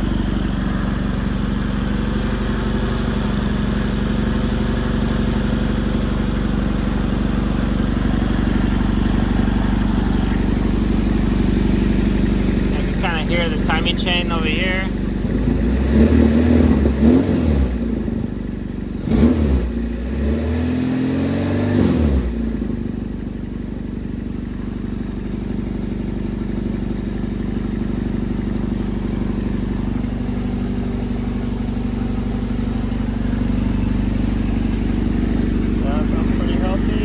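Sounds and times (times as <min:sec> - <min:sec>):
car engine idling: 0:00.0 - 0:37.0
car engine revving: 0:04.1 - 0:22.8, 0:30.8 - 0:37.0.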